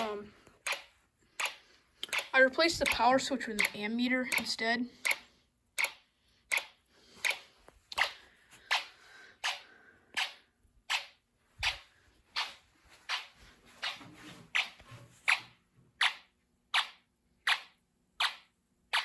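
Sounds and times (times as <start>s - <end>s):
sharp electronic clicks: 0.0s - 7.4s.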